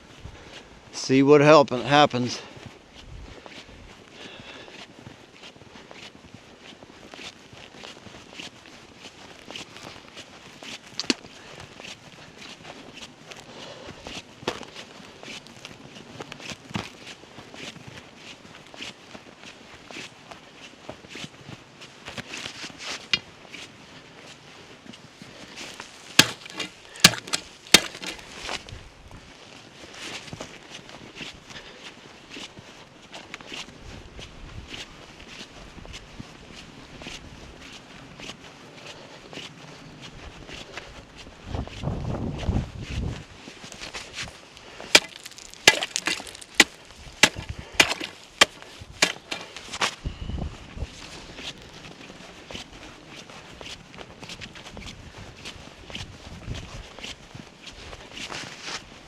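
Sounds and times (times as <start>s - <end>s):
footsteps: 2.3s - 50.0s
sharp knocks on thin ice: 11.0s - 11.2s, 26.1s - 28.2s, 44.8s - 49.6s
sharp knocks: 26.2s - 28.1s.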